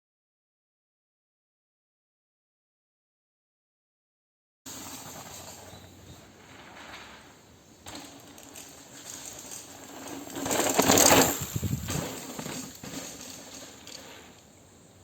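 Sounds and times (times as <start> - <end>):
bike tyres rushing over dirt: 4.7 - 15.0.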